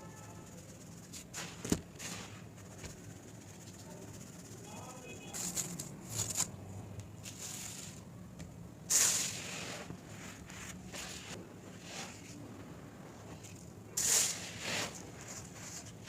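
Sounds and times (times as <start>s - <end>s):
dry material crumbling and crackling: 0.5s - 6.5s.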